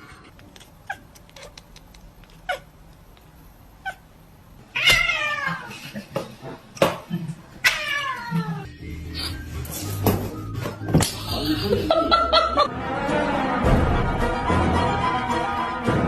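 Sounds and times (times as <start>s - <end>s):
cat meowing: 4.7s - 5.7s, 7.6s - 8.7s.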